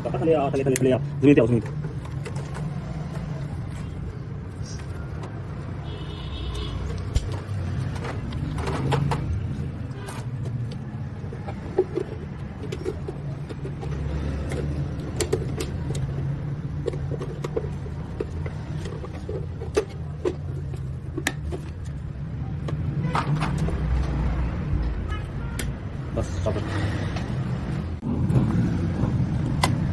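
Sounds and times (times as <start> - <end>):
vehicle engine rumbling: 0.0 - 29.9
sharp clicks and knocks: 6.5 - 26.6, 28.2 - 29.9.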